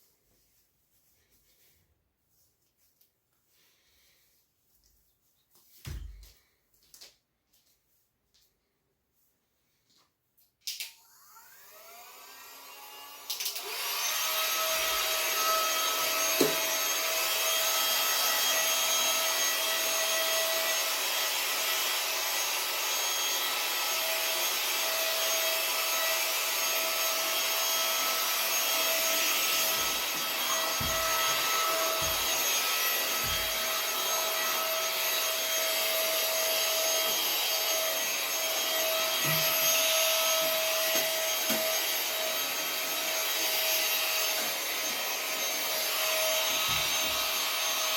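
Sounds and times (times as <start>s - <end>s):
vacuum cleaner whine: 10.9s - 47.9s.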